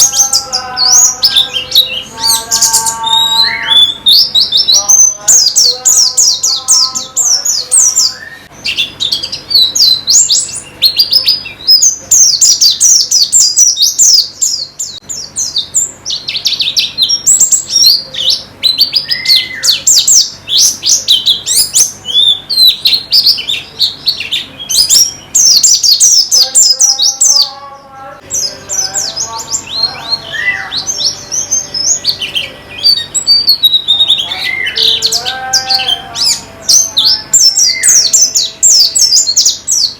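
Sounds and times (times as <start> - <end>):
bird twittering chatter: 0.0 - 27.3.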